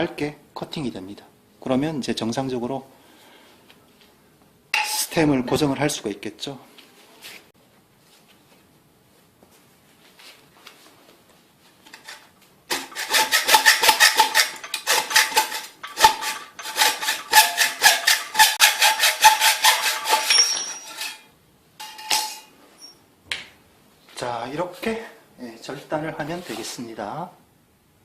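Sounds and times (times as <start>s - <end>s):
hacksaw cutting metal tube: 4.8s - 5.1s, 11.9s - 22.5s.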